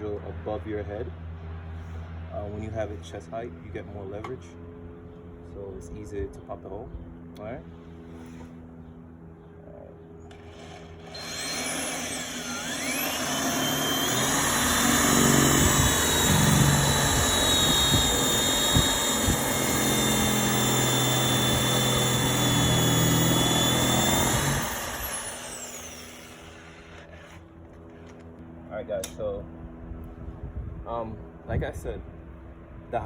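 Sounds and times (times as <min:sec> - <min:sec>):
drill bit grinding into wall: 0:10.3 - 0:28.2
electric drill whining: 0:10.3 - 0:28.3.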